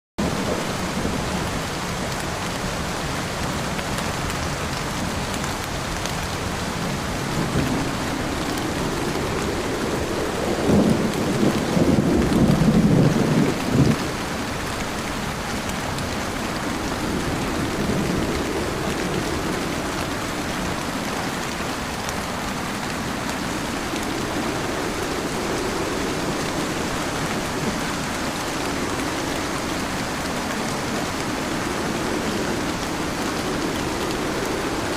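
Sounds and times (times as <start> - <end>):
heavy rain on a car: 0.2 - 34.9
low rumble: 6.9 - 14.0, 22.6 - 34.9.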